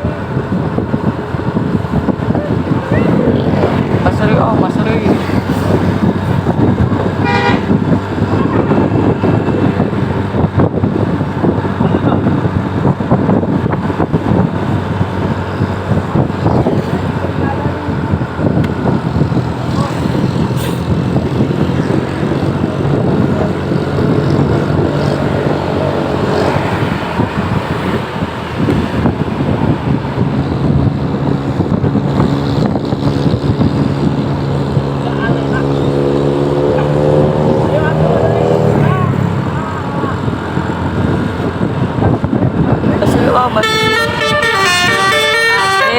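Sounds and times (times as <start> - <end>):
bus engine: 0.0 - 45.9
traffic noise: 0.0 - 45.9
musical multi-tone air horn: 7.2 - 7.9, 43.6 - 45.9.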